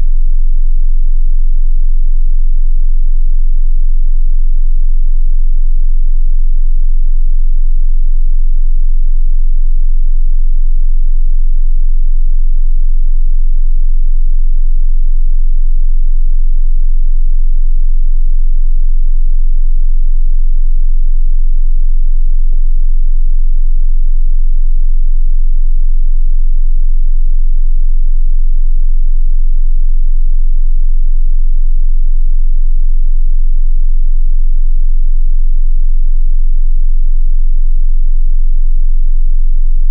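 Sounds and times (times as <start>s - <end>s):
deep bass test tone: 0.0s - 39.9s.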